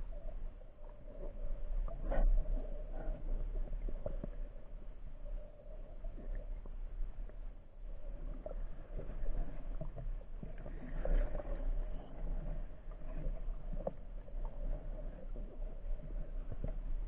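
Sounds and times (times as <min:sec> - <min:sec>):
underwater water rumble: 0:00.0 - 0:17.0
faint clicks and knocks: 0:08.3 - 0:16.8.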